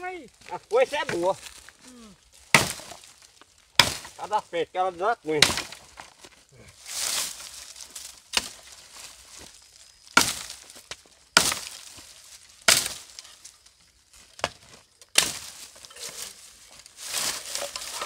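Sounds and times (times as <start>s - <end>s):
tool strikes chopping wood: 2.5s - 3.1s, 3.8s - 4.2s, 5.3s - 6.1s, 8.3s - 8.6s, 10.1s - 11.8s, 12.7s - 13.2s, 14.4s - 15.6s
rustling: 5.6s - 18.0s.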